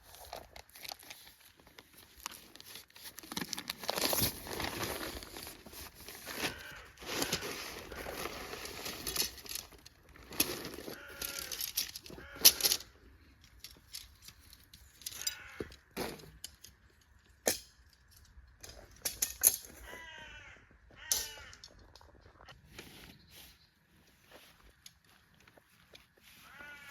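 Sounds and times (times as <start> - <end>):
tent fabric rustling and crinkling: 0.0 - 12.7.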